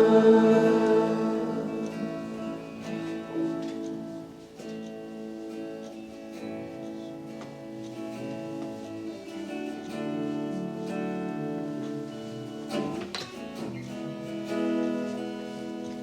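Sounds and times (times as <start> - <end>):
acoustic guitar strumming chords: 0.0 - 6.3.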